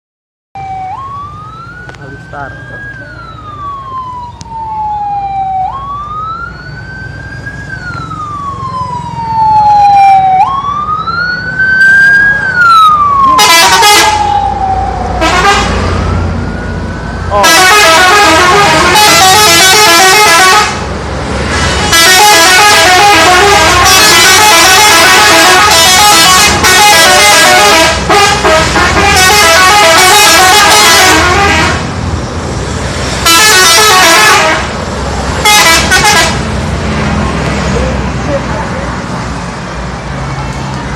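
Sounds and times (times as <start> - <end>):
siren wailing: 0.6 - 20.8, 21.8 - 28.1
bus horns blaring tunes: 12.8 - 14.4, 15.2 - 16.0, 17.3 - 32.0, 33.1 - 36.7.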